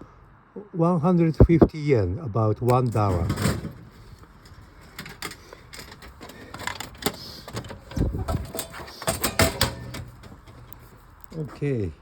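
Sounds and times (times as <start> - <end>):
vending machine hum: 2.7 - 11.5
coins clinking into machine: 2.9 - 10.8
knocks and clatter: 2.9 - 11.0.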